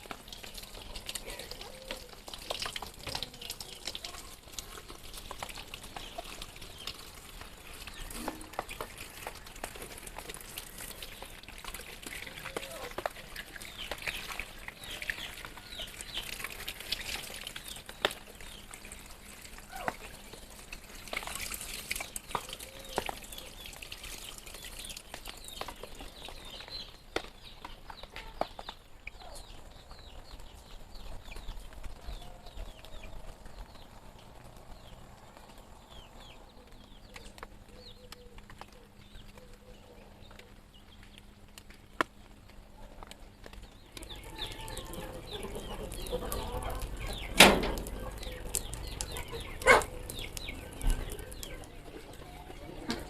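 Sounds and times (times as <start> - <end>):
chickens clucking: 43.8 - 53.0.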